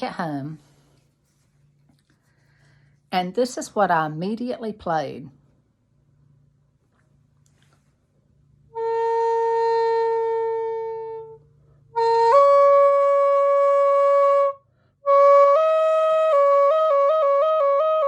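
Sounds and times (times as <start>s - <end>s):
bamboo flute long notes: 8.7s - 18.0s.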